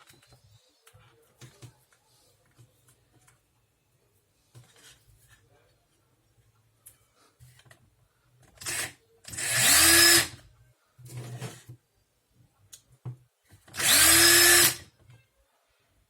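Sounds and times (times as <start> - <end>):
cordless drill motor whine: 9.4 - 10.4, 13.8 - 14.8.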